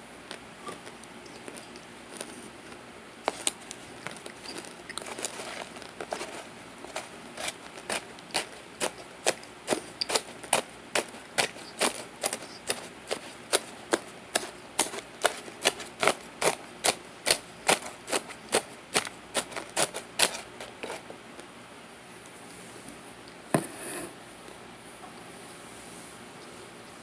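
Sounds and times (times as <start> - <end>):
person chewing crunchy food: 0.2 - 21.1.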